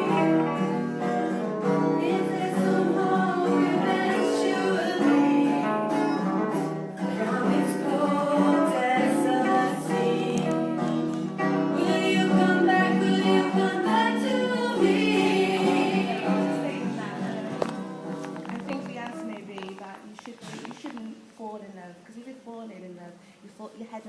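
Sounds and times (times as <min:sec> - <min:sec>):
guitar accompaniment: 0:00.0 - 0:21.3
people singing together: 0:02.0 - 0:06.0, 0:07.0 - 0:17.6.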